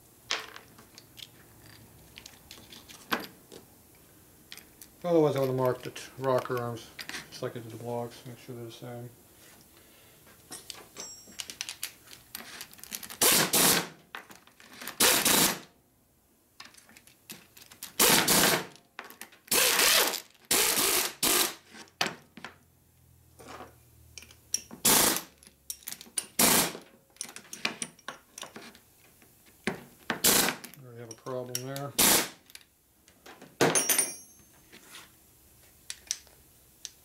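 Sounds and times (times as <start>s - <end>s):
metal clicks and clinks: 10.5s - 13.0s, 24.1s - 24.8s, 25.4s - 26.4s, 33.7s - 34.6s.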